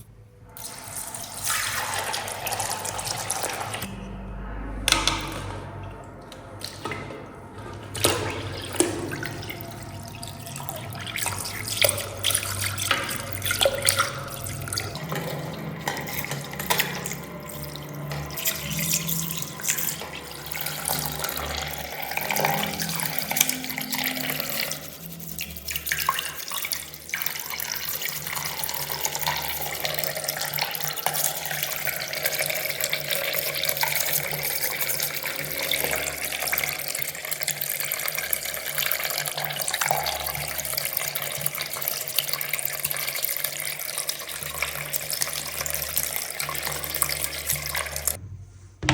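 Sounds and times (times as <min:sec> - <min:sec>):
water running from tap: 0:00.6 - 0:03.9, 0:06.2 - 0:48.2.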